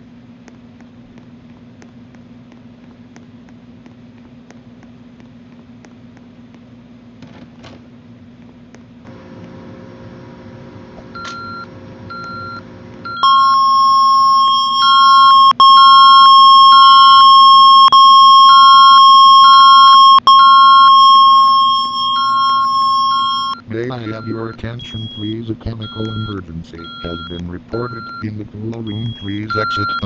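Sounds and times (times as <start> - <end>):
loud steady alert tone: 11.2 - 30.0
pulsing beep: 11.2 - 30.0.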